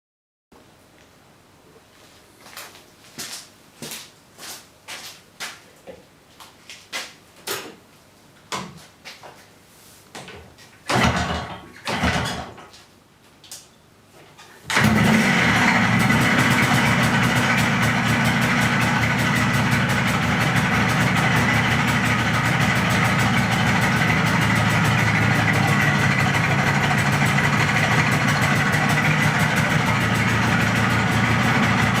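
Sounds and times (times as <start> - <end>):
motorcycle engine running: 14.7 - 32.0.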